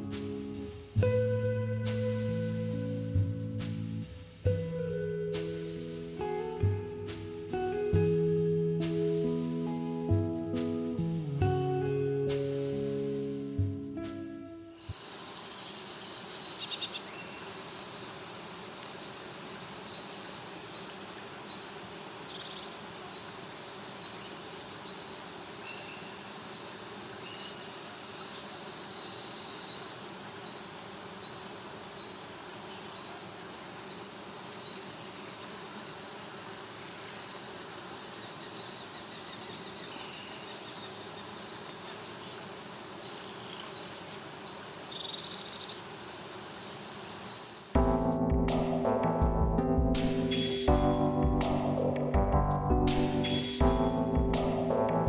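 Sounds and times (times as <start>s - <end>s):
woodland birds calling: 14.8s - 48.9s
bird repeating high chirp: 15.8s - 17.1s.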